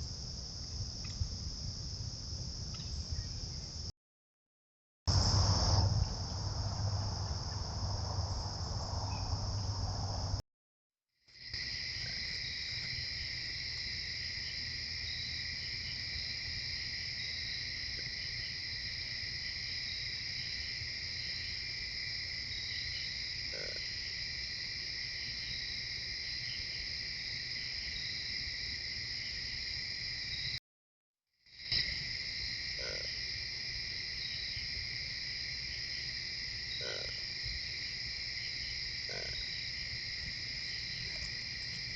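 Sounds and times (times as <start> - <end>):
crickets trilling: 5.1 - 10.4, 11.4 - 30.6, 31.5 - 41.9
low rumble: 5.1 - 10.4.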